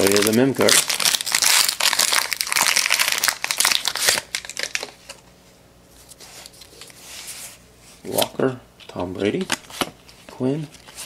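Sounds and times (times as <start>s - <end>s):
plastic wrapper crinkling: 0.0s - 5.2s.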